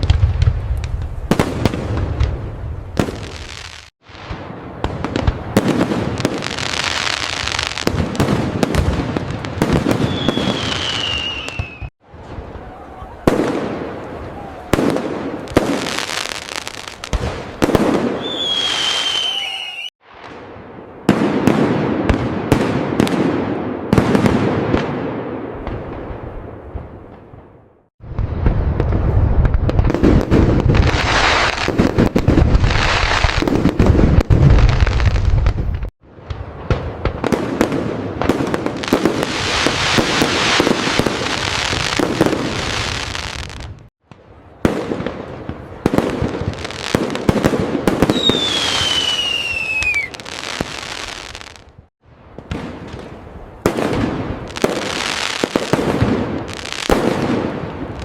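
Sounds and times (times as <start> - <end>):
fireworks crackling and bursting: 0.0 - 58.0
falling firework whistle: 9.8 - 13.6, 17.7 - 19.9, 48.0 - 51.6.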